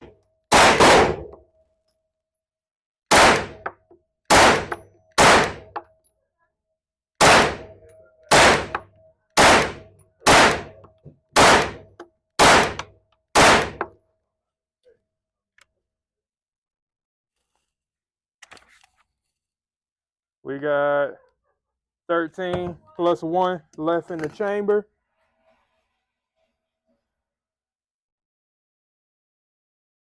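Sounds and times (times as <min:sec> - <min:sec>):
rifle shots echoing: 0:00.5 - 0:01.3, 0:03.1 - 0:03.7, 0:04.3 - 0:05.7, 0:07.2 - 0:08.8, 0:09.4 - 0:10.8, 0:11.4 - 0:13.8.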